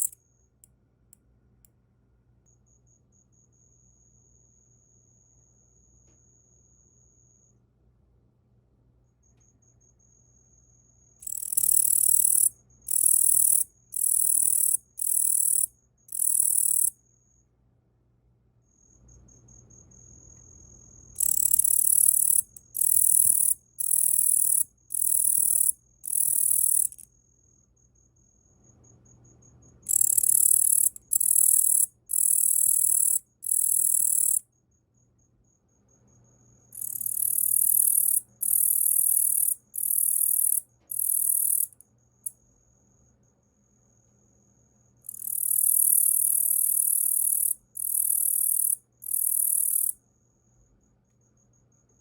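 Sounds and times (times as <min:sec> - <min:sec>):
katydid buzzing trills: 0:11.2 - 0:16.9, 0:21.2 - 0:27.0, 0:29.9 - 0:34.4.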